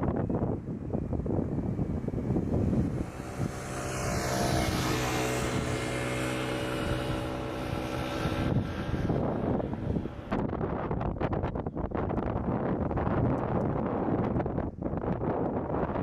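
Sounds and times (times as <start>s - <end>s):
wind buffeting microphone: 0.0s - 16.0s
jet airliner passing: 1.0s - 10.4s.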